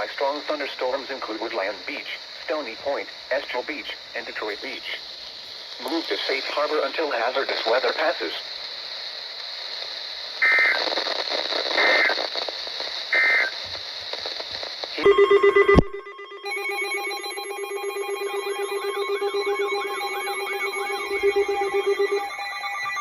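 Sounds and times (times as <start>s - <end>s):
radio hiss: 0.0s - 15.1s, 16.5s - 23.0s
digital data tone bursts: 15.0s - 23.0s
loud pulsing tone: 15.0s - 23.0s.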